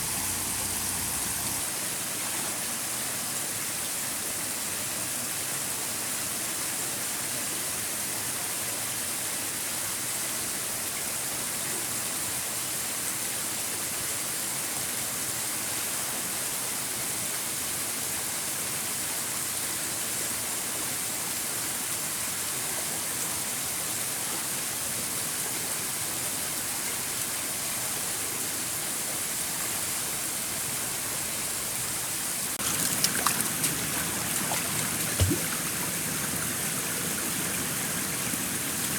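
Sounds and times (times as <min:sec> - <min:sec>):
stream water rushing: 0:00.0 - 0:03.8, 0:28.9 - 0:38.9.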